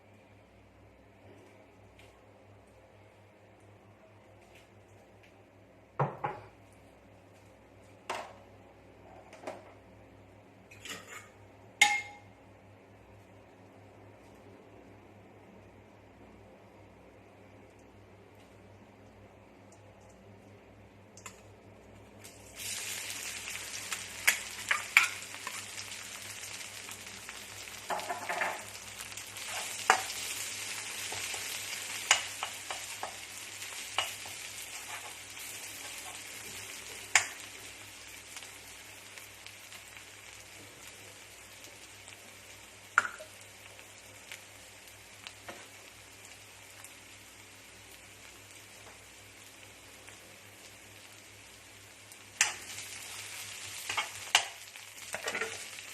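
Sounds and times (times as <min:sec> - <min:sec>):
food sizzling in hot oil: 0:22.2 - 0:55.9.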